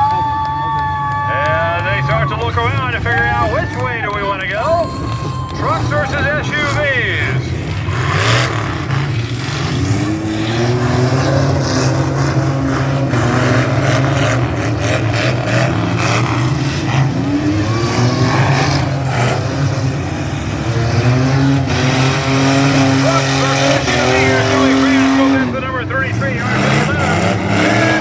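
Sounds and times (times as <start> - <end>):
truck engines revving: 0.0 - 28.0.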